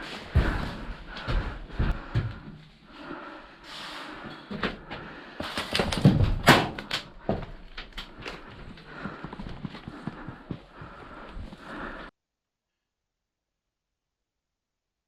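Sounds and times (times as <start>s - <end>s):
knocks and thumps: 4.5s - 7.6s.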